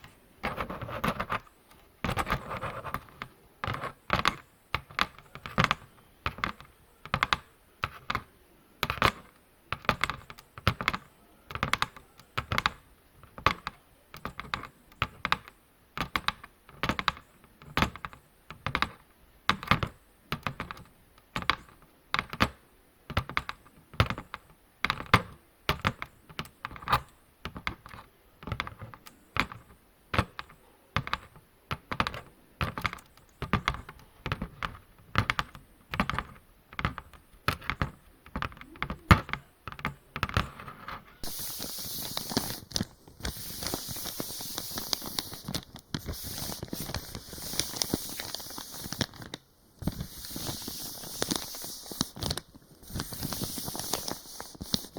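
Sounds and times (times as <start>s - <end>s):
rubbing strokes on microphone: 0.0s - 1.4s, 41.2s - 54.9s
crinkly crackling: 40.6s - 54.9s.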